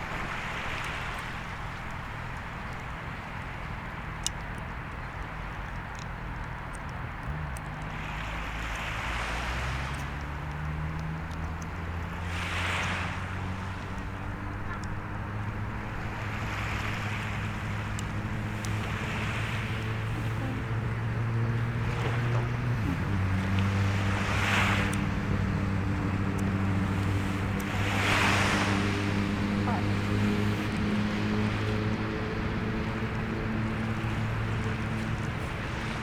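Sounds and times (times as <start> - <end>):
waves washing onto shore: 0.0 - 36.0
low engine drone: 13.4 - 36.0.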